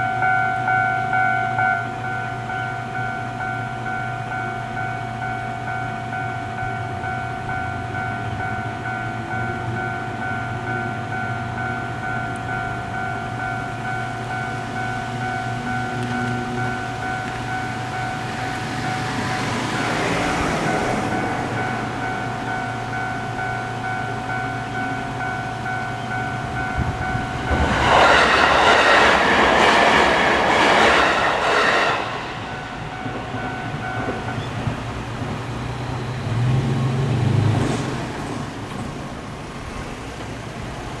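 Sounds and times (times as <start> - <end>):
level crossing alarm ringing: 0.0 - 28.2, 32.1 - 35.1
train wheels clattering: 26.4 - 35.4.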